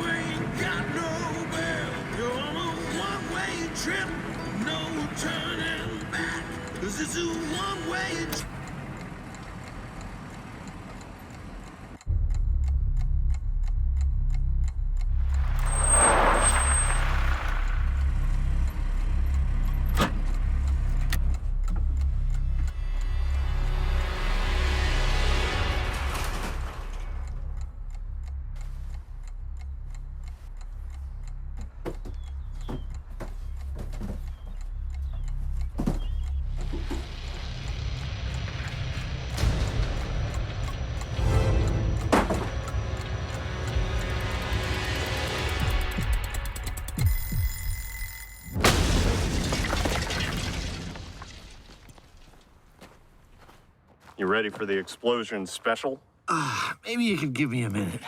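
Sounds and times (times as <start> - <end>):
low vehicle engine rumble: 0.0 - 46.9
regular ticking: 0.0 - 49.5, 52.7 - 58.0
low steady drone: 34.0 - 47.0.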